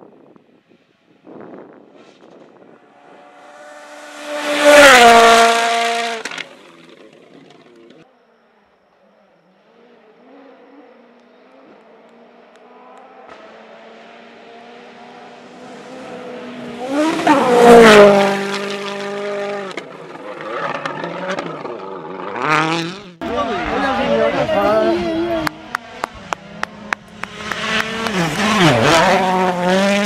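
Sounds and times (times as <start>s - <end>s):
rally car engine passing: 1.8s - 8.0s, 9.3s - 30.0s.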